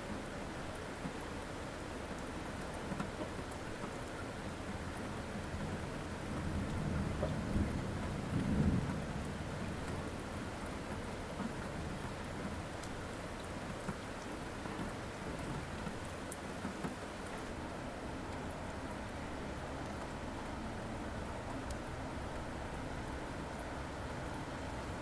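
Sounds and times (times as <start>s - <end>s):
steady rain: 0.0s - 25.0s
low rumble of thunder: 6.2s - 10.5s.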